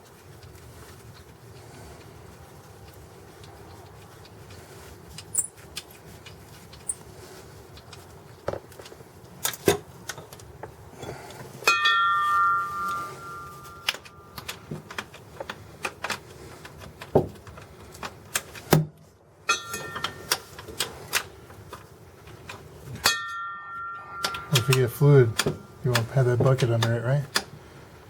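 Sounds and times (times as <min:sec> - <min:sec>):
hand tools clicking and knocking: 0:03.4 - 0:07.0, 0:19.5 - 0:27.5
ringing metallic tone: 0:11.7 - 0:14.4, 0:23.0 - 0:25.0.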